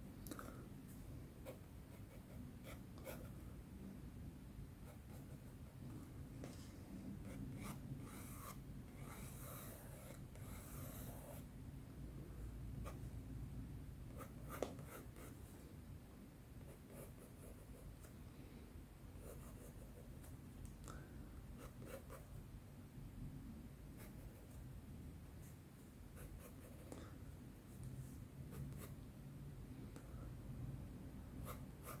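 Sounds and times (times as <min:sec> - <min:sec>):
pencil scratching on paper: 0:04.8 - 0:05.7, 0:07.2 - 0:11.5, 0:14.1 - 0:15.6, 0:16.6 - 0:18.1, 0:19.2 - 0:20.4, 0:21.6 - 0:22.3, 0:25.4 - 0:27.0, 0:31.4 - 0:32.0.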